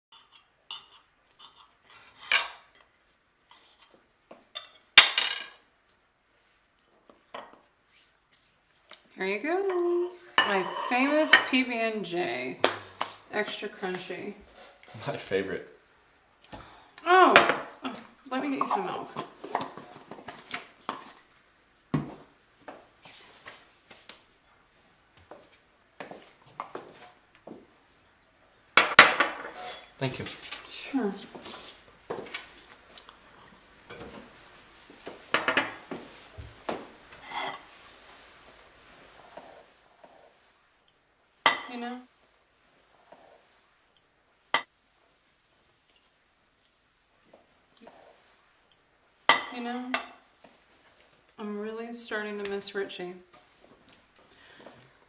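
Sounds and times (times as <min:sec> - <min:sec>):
knocks and clinks of dishes: 0:00.1 - 0:02.6
dishes and cutlery clinking: 0:00.1 - 0:05.6, 0:09.6 - 0:11.7, 0:28.8 - 0:30.7, 0:31.4 - 0:38.4, 0:41.4 - 0:41.8, 0:49.3 - 0:50.2.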